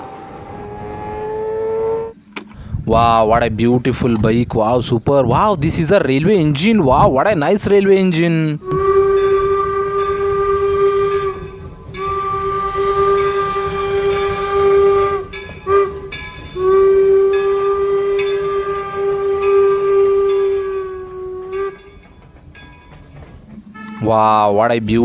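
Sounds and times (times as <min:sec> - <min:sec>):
electronic toy train whistle: 0:00.0 - 0:02.2, 0:08.6 - 0:21.9.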